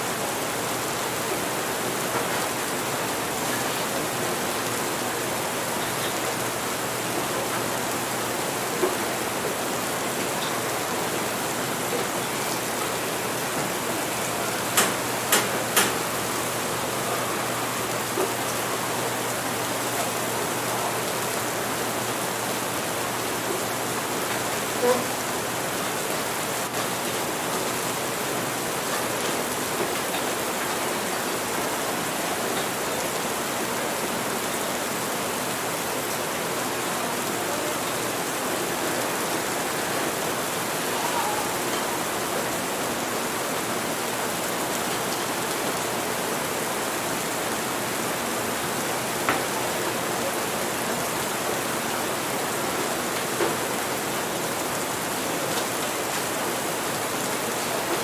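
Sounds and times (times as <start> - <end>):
steady rain: 0.0 - 58.0
coffee shop ambience: 35.9 - 58.0.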